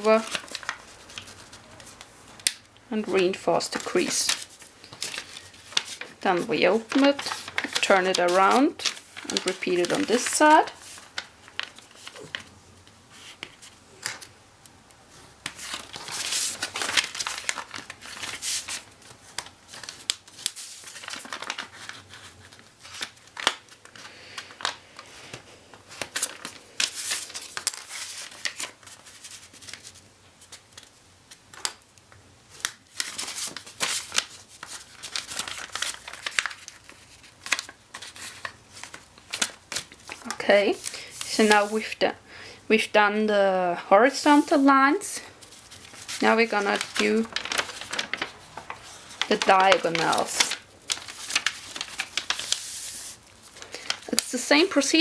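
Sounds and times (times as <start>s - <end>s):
paper rustling and crackling: 0.0s - 14.3s, 15.1s - 31.9s, 32.5s - 42.0s, 44.0s - 55.0s
paper creases snapping: 45.9s - 52.6s.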